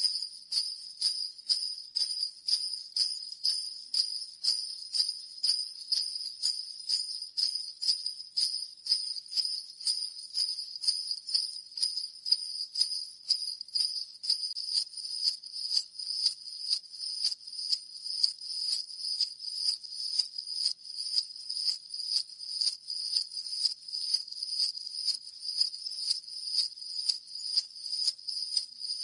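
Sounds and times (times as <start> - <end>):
sleigh bells jingling: 0.0 - 14.6.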